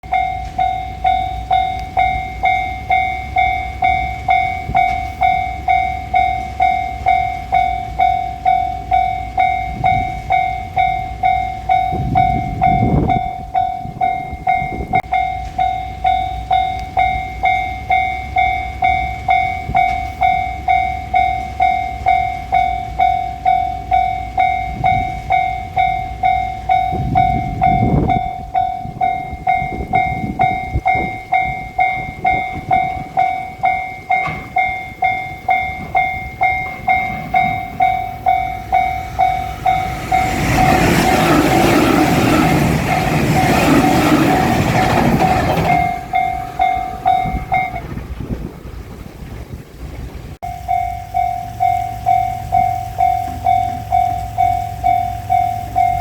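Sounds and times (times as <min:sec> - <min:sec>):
level crossing bell ringing: 0:00.0 - 0:48.0, 0:50.4 - 0:56.0
low rumble: 0:27.1 - 0:50.4.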